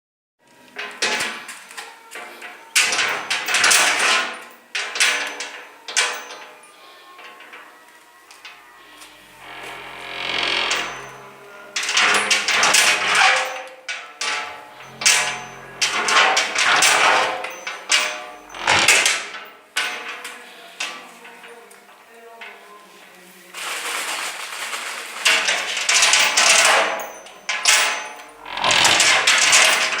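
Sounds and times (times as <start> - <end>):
door rattling in frame: 2.8 - 6.4, 9.2 - 20.2, 25.2 - 30.0.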